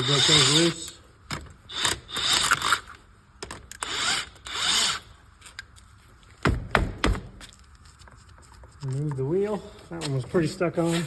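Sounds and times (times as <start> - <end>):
power tool spinning lug nuts: 0.0 - 1.0, 1.6 - 5.2.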